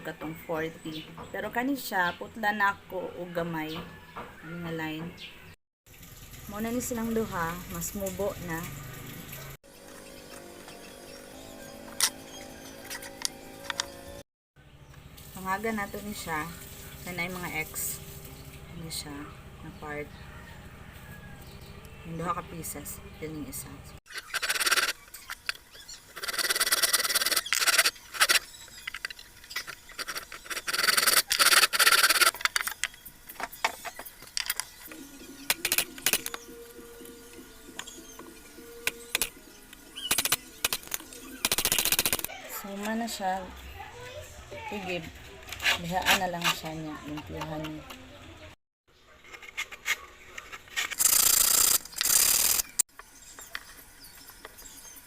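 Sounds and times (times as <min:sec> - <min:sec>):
rasping strokes on wood: 0:26.2 - 0:28.5, 0:45.5 - 0:47.7
sandpaper scraping wood: 0:26.2 - 0:28.5, 0:30.0 - 0:32.3, 0:45.5 - 0:46.8.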